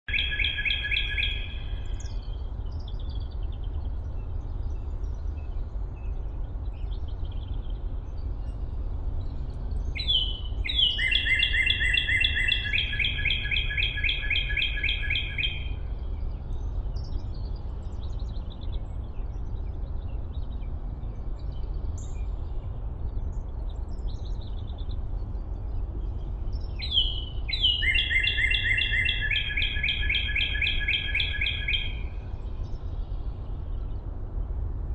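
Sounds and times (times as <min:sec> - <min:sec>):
songbird fast trill: 0:00.1 - 0:05.6, 0:09.4 - 0:15.9, 0:26.2 - 0:33.8
faint bird chirps: 0:00.1 - 0:34.6
steady low rumble: 0:00.3 - 0:34.9.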